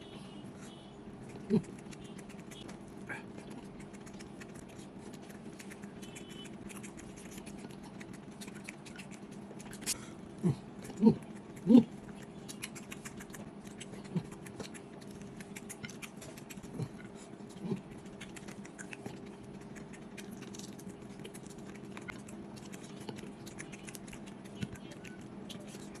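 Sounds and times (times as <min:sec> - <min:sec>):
wet mouth clicks and chewing: 0:01.2 - 0:26.0
short low throat hums: 0:09.9 - 0:11.9.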